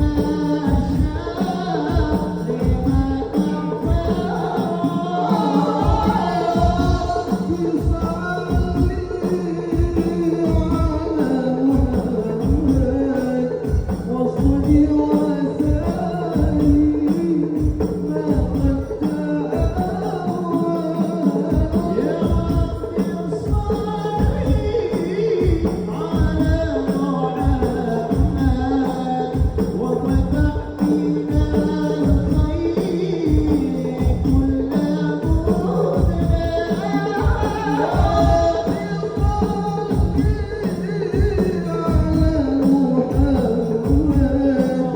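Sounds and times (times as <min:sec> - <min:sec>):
frame drums beating: 0:00.0 - 0:44.9.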